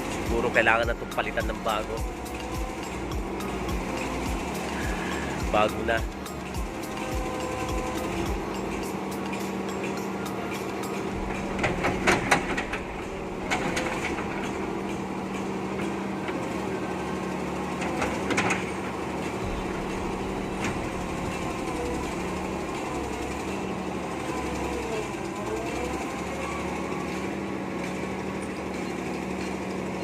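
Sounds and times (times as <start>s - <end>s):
excavator diesel engine running: 0.0s - 30.0s
loud metallic clanks: 10.9s - 16.2s, 17.8s - 23.6s.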